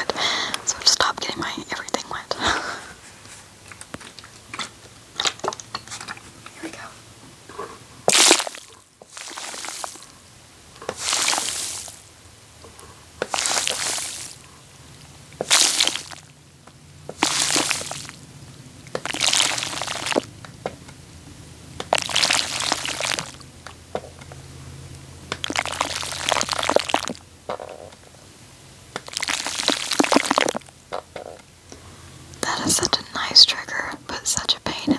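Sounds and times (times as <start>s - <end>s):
wet squishing and sloshing: 8.0s - 12.2s, 13.1s - 16.4s, 17.1s - 20.4s, 21.8s - 23.6s, 25.3s - 27.3s, 28.9s - 30.9s.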